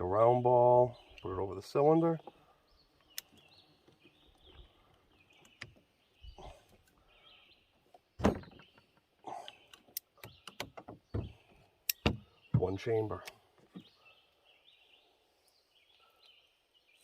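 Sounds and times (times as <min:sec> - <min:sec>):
louder thump: 0:08.2 - 0:08.6.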